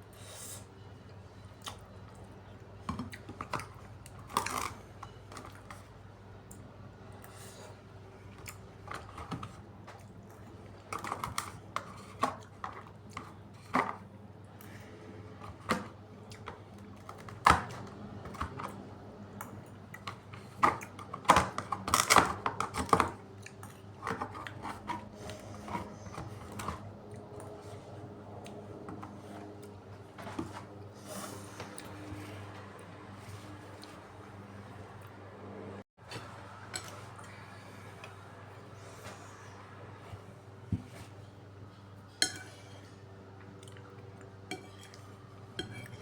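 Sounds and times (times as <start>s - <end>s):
chewing and mouth noises: 43.4s - 45.2s.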